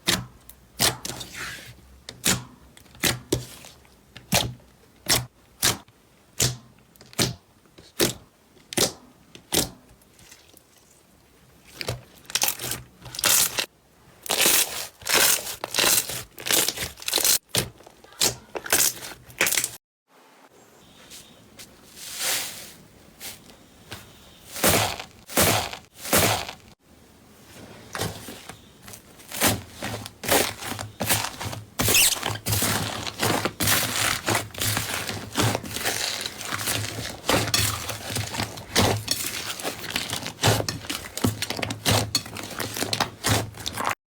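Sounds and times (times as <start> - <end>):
slime clicking and crackling: 11.7 - 19.8, 29.3 - 44.0.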